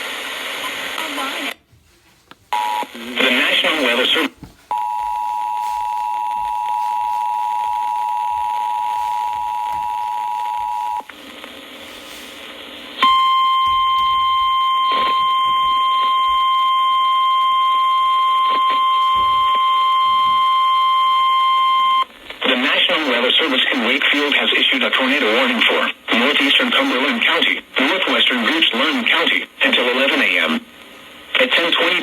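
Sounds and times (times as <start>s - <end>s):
single-tone warning alarm: 4.7s - 11.1s, 13.0s - 22.1s.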